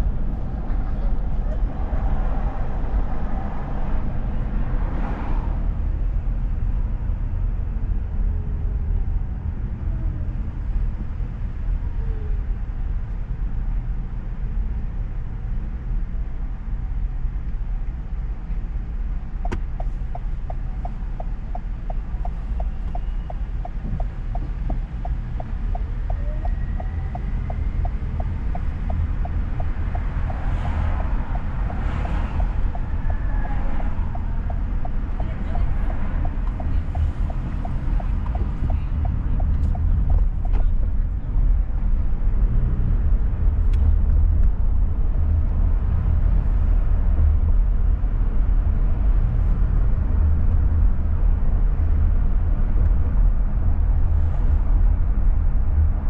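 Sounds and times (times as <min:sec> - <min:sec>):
car road and engine rumble: 0:00.0 - 0:56.0
turn signal ticking: 0:19.2 - 0:40.9.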